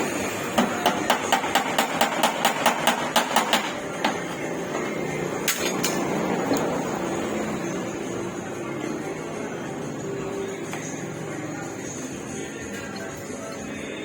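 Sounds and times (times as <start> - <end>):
workshop hum: 0.0 - 14.0
hammer tapping on metal panel: 0.6 - 4.2.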